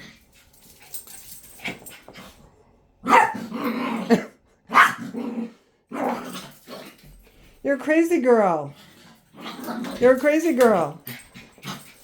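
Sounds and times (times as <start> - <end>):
dog barking: 3.0 - 3.5, 4.7 - 5.1.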